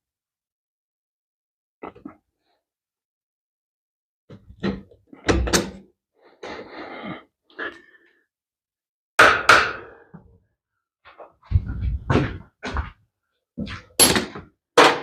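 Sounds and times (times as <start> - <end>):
knocks and clunks of metal parts: 4.3 - 5.9.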